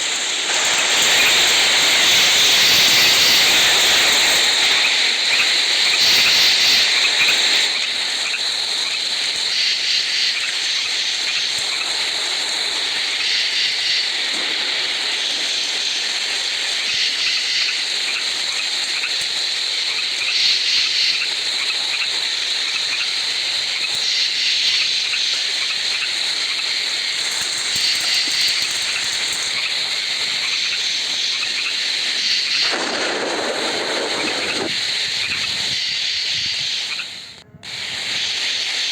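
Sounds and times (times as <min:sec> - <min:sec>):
steady high hiss: 0:00.0 - 0:38.9
low rushing noise: 0:32.6 - 0:36.6.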